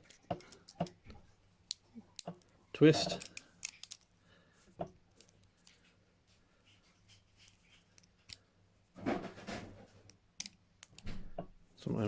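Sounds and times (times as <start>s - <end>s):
metallic clicks of lock picking: 1.7s - 4.1s, 10.1s - 11.2s
handcuff rattle: 3.0s - 4.1s.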